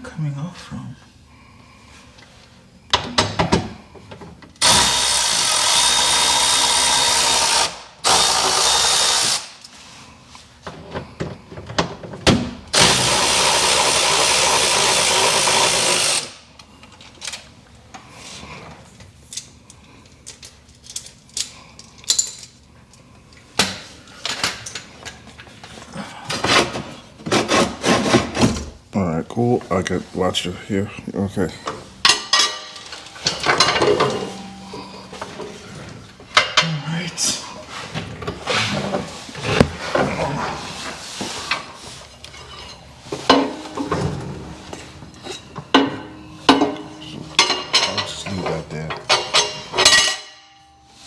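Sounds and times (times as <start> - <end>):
pneumatic tool running: 4.6 - 9.7, 12.7 - 16.4
tools and metal parts clanking: 19.3 - 22.6, 31.6 - 36.8, 41.4 - 50.6.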